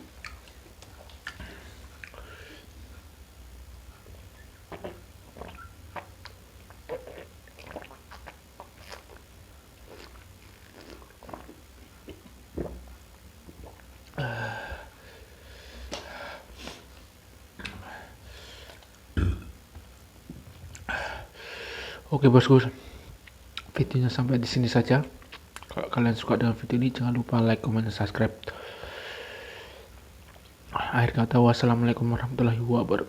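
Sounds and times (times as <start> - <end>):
chewing mouth sounds: 4.7 - 14.2
breathy noise: 14.2 - 16.8.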